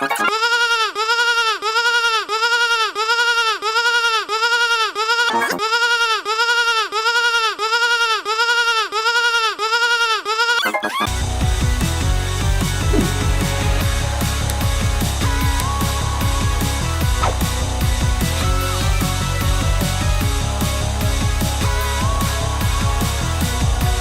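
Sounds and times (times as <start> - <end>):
music with heavy bass: 11.1 - 24.0.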